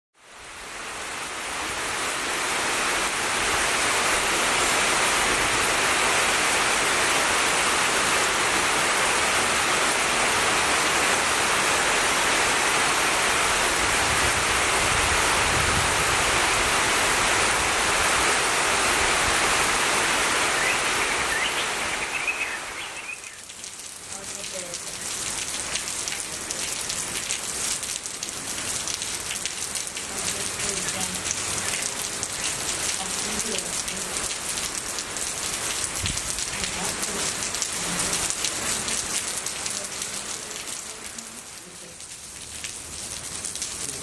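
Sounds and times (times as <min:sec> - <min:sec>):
heavy rain falling: 0:00.2 - 0:44.0.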